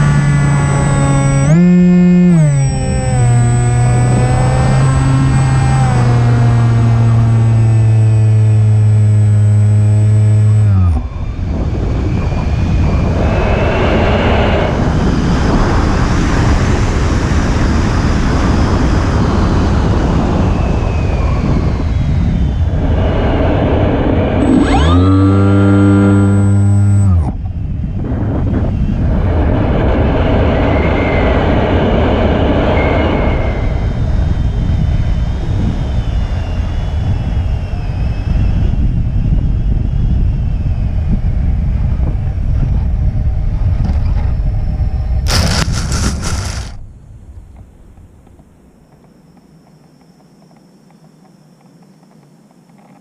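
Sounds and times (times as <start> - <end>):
electric propeller motor buzzing: 0.0 - 15.8, 21.8 - 27.4, 45.3 - 46.8
wind rushing over microphone: 0.0 - 48.5
short harsh burst: 45.3 - 46.8.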